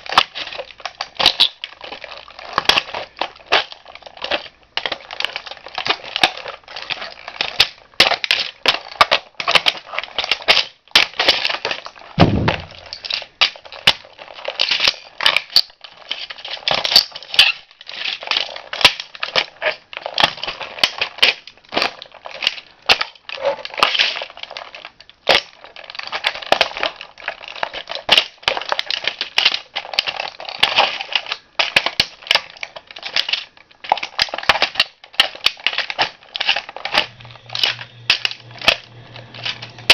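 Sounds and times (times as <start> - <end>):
toy car crunching and cracking: 0.0 - 39.9
heavy low thump: 12.2 - 12.9.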